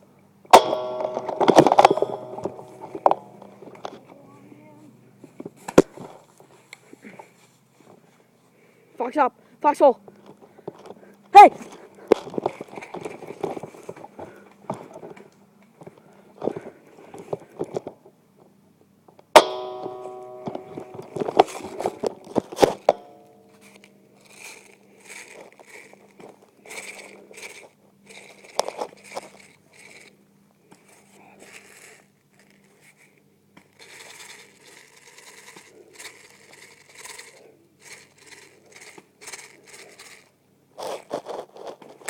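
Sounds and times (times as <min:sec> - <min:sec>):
rustling through dry leaves: 0:23.6 - 0:30.1.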